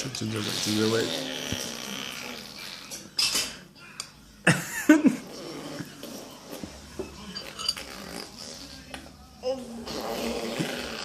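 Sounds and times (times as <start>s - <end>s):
mouth-made fart noises: 0.3s - 3.0s, 5.2s - 6.8s, 7.8s - 8.8s, 9.8s - 11.0s.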